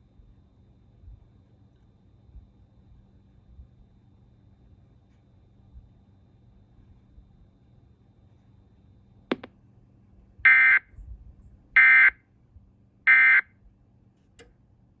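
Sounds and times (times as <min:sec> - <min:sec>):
sharp click: 0:09.3 - 0:09.5.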